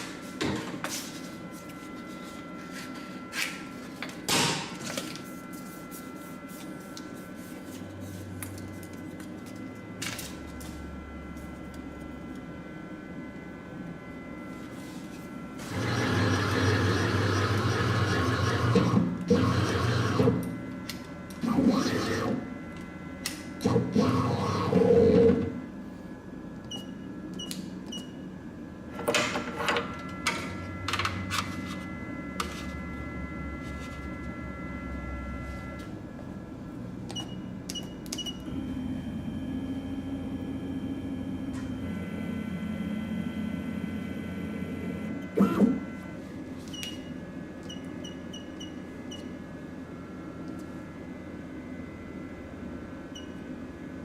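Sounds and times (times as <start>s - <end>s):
milling machine whine: 10.8s - 25.6s, 38.5s - 46.2s.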